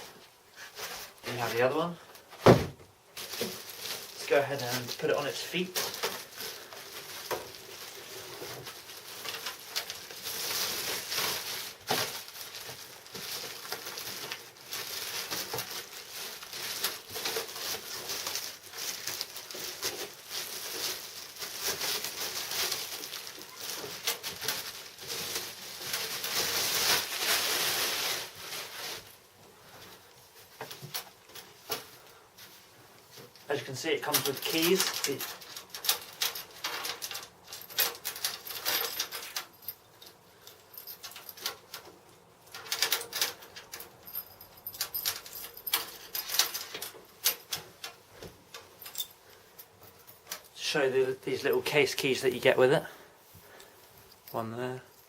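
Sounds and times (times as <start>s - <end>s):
packing materials rustling: 0.0s - 55.0s.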